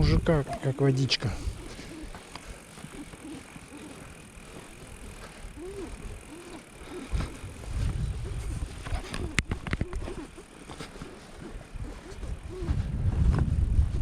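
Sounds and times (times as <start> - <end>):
bicycle tyres rolling: 0.0 - 14.0
low microphone rumble: 7.0 - 10.4, 11.6 - 14.0.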